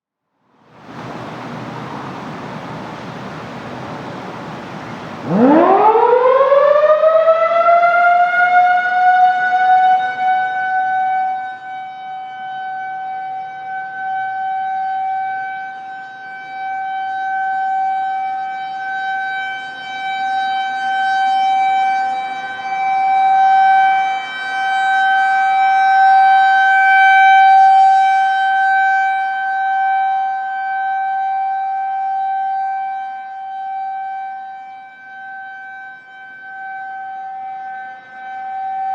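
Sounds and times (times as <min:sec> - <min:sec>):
rotating warning siren: 0:00.8 - 0:38.9.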